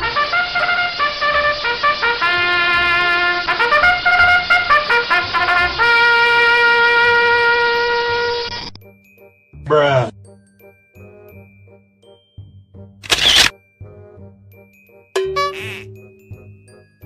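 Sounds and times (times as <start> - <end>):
trumpet melody: 0.0 - 8.5, 15.2 - 16.6.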